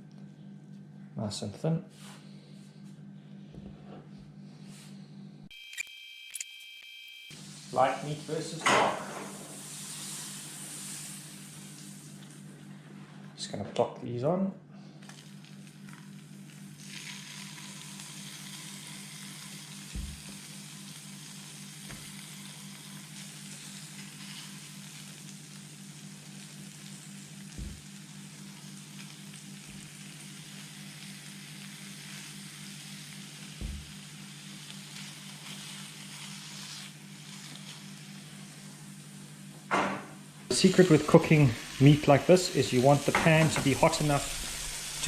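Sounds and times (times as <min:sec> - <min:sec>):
steady low hum: 0:00.0 - 0:17.0, 0:27.1 - 0:30.0
meat sizzling in a pan: 0:09.1 - 0:12.2, 0:15.2 - 0:39.1, 0:40.5 - 0:45.0.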